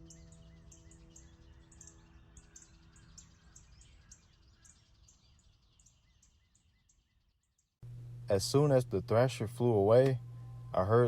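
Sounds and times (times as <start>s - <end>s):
low note of background music: 0.0s - 5.5s, 7.8s - 11.0s
faint birds chirping: 0.0s - 11.0s.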